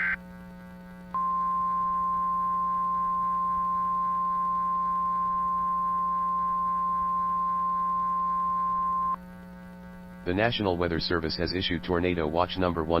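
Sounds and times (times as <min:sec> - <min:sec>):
faint low hum: 0:00.0 - 0:13.0
high pure alarm tone: 0:01.2 - 0:09.2.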